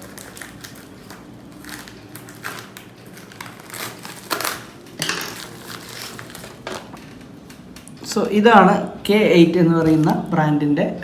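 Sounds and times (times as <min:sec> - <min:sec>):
packaging crinkling and rustling: 0:00.0 - 0:07.4, 0:09.8 - 0:10.4.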